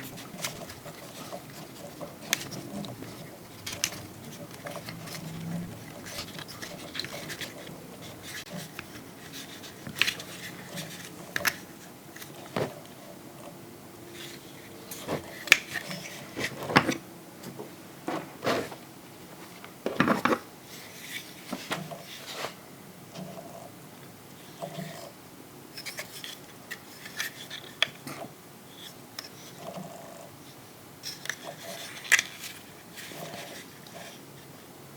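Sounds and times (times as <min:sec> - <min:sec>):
plastic parts clicking and knocking: 0:00.0 - 0:12.8.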